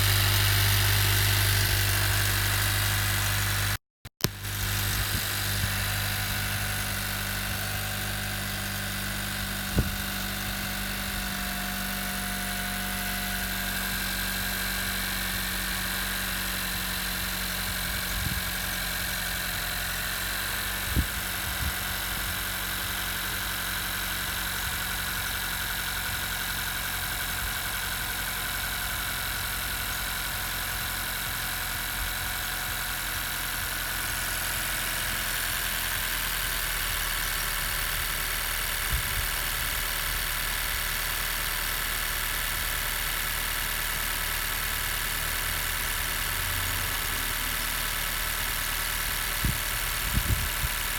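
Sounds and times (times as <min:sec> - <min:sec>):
car engine idling: 0:00.0 - 0:50.9
high-pitched whine: 0:43.8 - 0:50.9.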